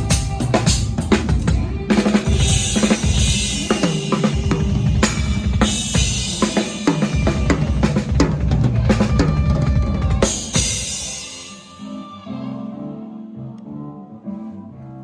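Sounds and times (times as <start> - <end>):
drum kit playing: 0.0 - 11.8.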